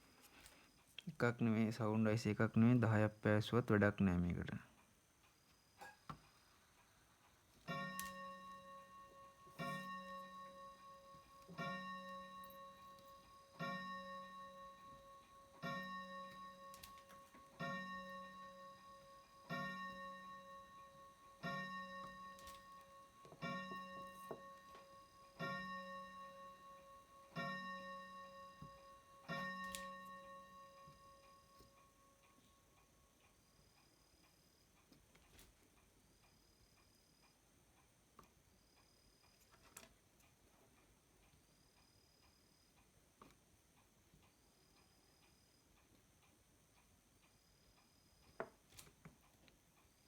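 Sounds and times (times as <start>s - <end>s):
faint steady high tone: 0.0s - 34.8s.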